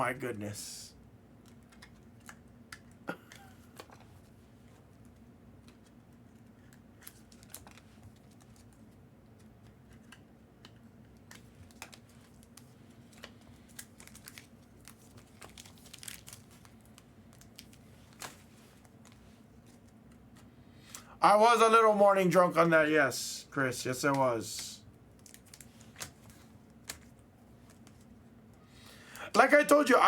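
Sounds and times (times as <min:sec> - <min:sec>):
cards and plastic holders crinkling: 0:01.4 - 0:03.0, 0:03.7 - 0:21.1, 0:24.0 - 0:28.2.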